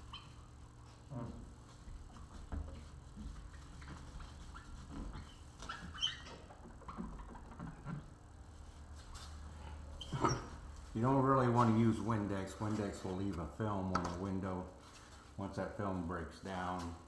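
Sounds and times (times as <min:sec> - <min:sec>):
cloth rubbing on glass: 0:00.0 - 0:13.2.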